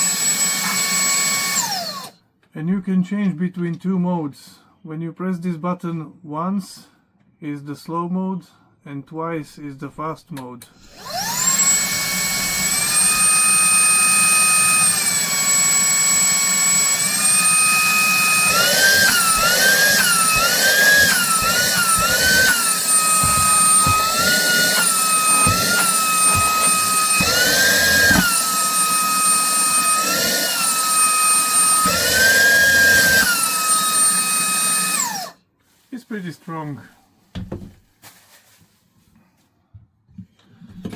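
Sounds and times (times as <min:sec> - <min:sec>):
handheld vacuum cleaner whine: 0:00.0 - 0:02.2, 0:10.8 - 0:35.4.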